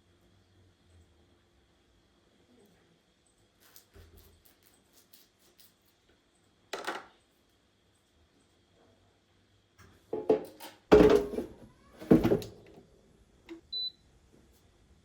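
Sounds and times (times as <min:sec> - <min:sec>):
knocks and clunks: 0:10.1 - 0:12.8.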